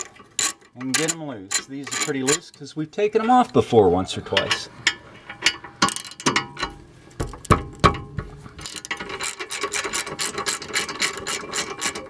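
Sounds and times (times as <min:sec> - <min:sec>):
wrench knocks on bolts: 0:04.4 - 0:09.2
ratchet wrench clicking: 0:08.6 - 0:12.0.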